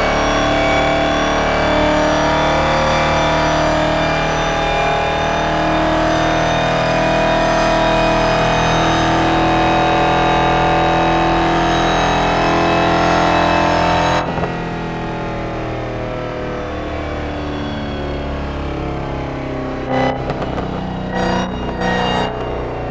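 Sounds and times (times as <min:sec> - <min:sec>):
loud car engine at held revs: 0:19.8 - 0:22.6.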